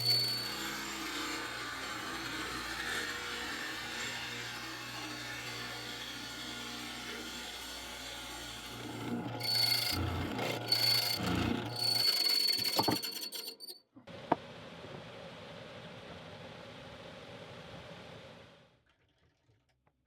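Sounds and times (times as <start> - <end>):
power tool cutting wood: 0.0 - 13.7.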